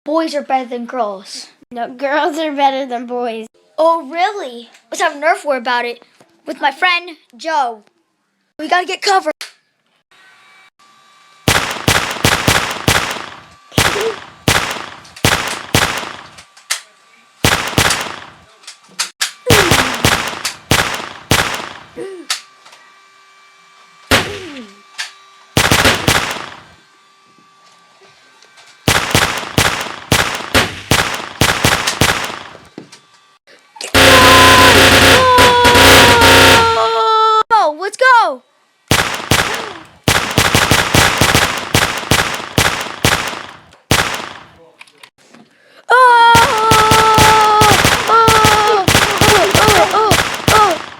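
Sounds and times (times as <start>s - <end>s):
loud continuous sound: 11.4s - 33.2s, 33.8s - 37.0s, 38.9s - 44.8s, 46.2s - 50.9s
rapid gunfire-like shots: 11.5s - 16.4s, 17.4s - 18.6s, 19.5s - 22.0s, 24.1s - 24.5s, 25.6s - 26.8s, 28.8s - 32.7s, 33.9s - 36.8s, 38.9s - 44.6s, 46.4s - 50.9s.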